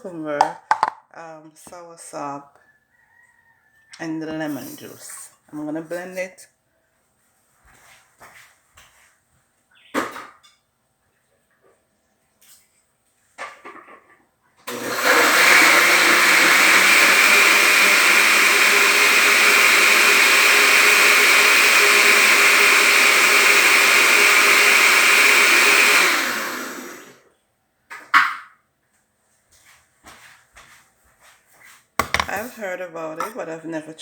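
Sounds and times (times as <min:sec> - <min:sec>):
blender running at high speed: 0:14.7 - 0:27.2.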